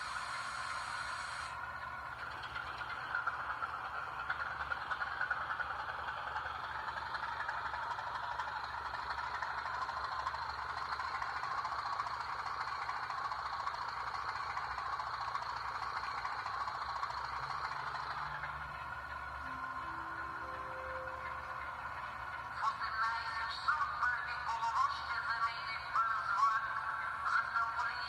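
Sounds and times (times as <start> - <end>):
model steam locomotive rushing noise: 0.0 - 28.0
low hum: 16.1 - 27.8.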